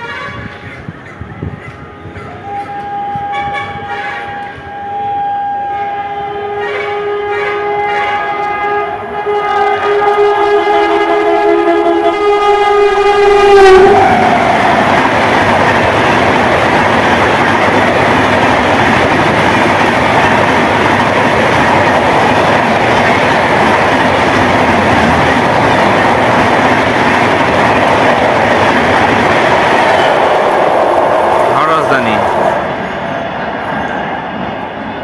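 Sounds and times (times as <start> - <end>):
train horn: 0.0 - 14.9
train wheels roaring on rail: 0.0 - 35.0.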